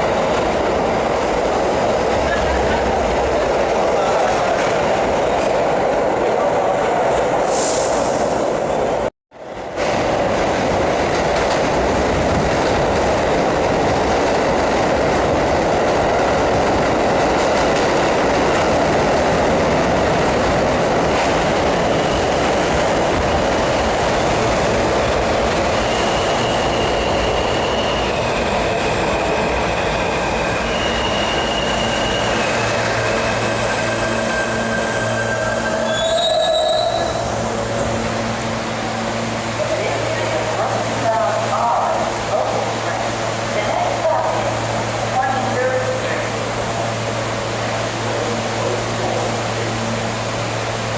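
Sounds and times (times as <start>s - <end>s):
subway train rumbling: 0.0s - 50.9s
train wheels squealing: 25.7s - 37.4s.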